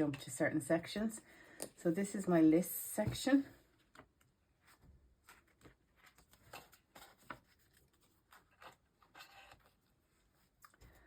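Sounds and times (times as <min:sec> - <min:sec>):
paper rustling and clicks: 0:05.2 - 0:09.7.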